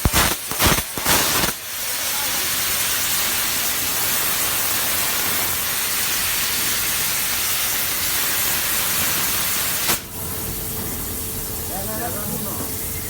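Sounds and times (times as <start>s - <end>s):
laser cutter hissing: 0.0s - 10.1s.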